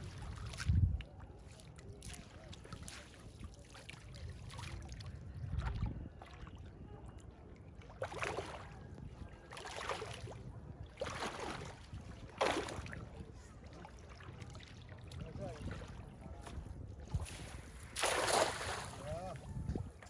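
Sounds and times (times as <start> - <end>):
wind rumble on microphone: 0.0 - 20.0
water splashes: 9.5 - 20.0.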